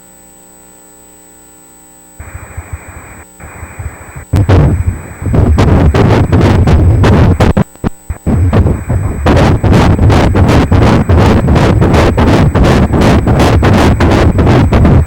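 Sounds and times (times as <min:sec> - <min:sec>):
doppler fetal heartbeat whooshing: 0:03.7 - 0:07.6, 0:08.2 - 0:15.0.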